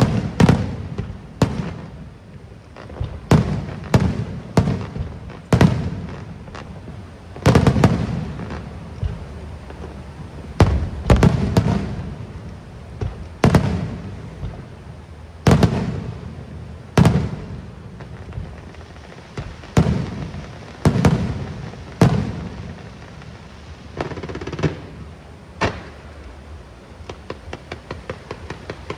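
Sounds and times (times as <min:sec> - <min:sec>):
fireworks booming: 0:00.0 - 0:28.9.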